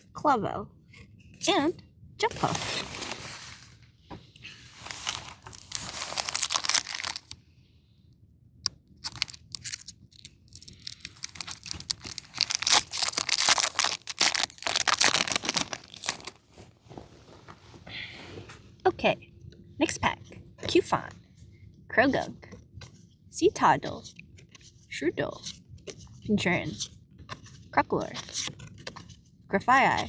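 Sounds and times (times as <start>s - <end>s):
foil wrapper crinkling and tearing: 4.7s - 7.4s, 9.0s - 16.5s.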